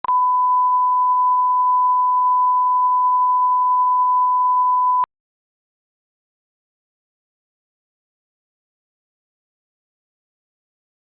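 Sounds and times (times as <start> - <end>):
censor bleep tone: 0.0 - 5.1.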